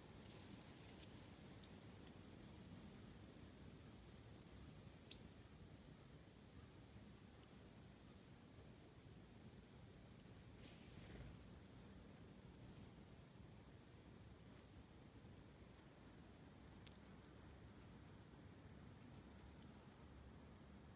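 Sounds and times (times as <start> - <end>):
chipmunk chip calls: 0.2 - 1.8, 2.6 - 3.0, 4.4 - 5.4, 7.4 - 7.8, 10.2 - 10.5, 11.6 - 12.9, 14.3 - 14.7, 16.8 - 17.4, 19.5 - 20.0.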